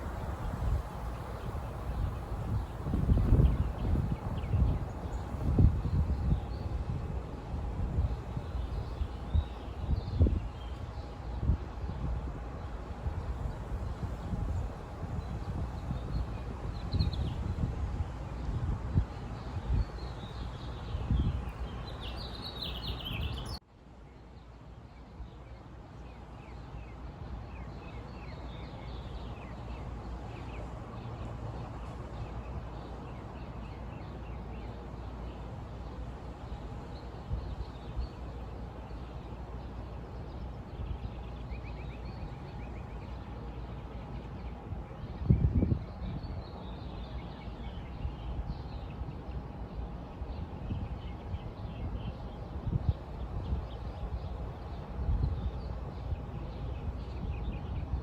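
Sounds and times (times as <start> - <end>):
small birds chirping: 19.4 - 23.6.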